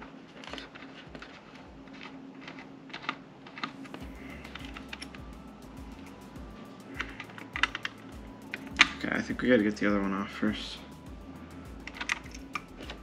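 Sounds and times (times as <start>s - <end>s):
small metal parts clicking: 11.8s - 13.0s.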